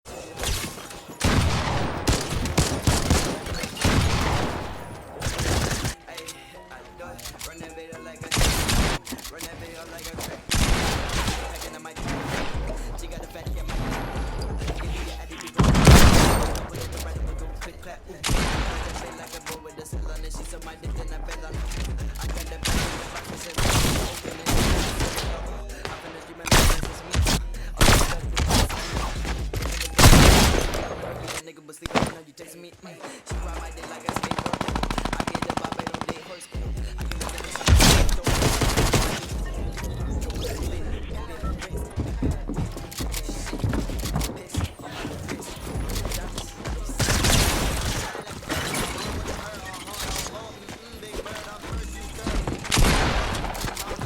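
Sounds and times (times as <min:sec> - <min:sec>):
hip hop beat with deep bass: 0:00.1 - 0:54.0
rapid gunfire with echo: 0:00.4 - 0:06.0, 0:07.6 - 0:15.0, 0:15.6 - 0:19.8, 0:22.0 - 0:32.2, 0:33.4 - 0:40.2, 0:43.8 - 0:54.0.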